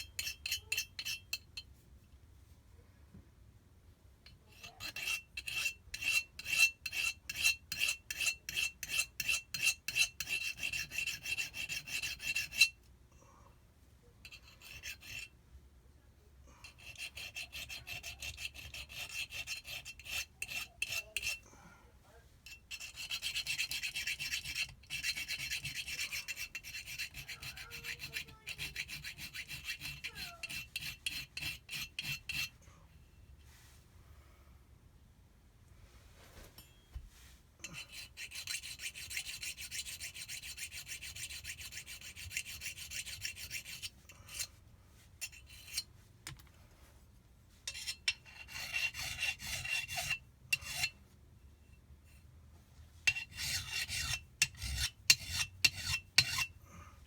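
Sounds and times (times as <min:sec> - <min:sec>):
hand file on metal: 0:00.0 - 0:01.6, 0:04.5 - 0:12.8, 0:14.2 - 0:15.3, 0:16.6 - 0:21.4, 0:22.5 - 0:32.6, 0:37.6 - 0:44.6, 0:45.2 - 0:45.9, 0:47.7 - 0:51.0, 0:53.0 - 0:56.6.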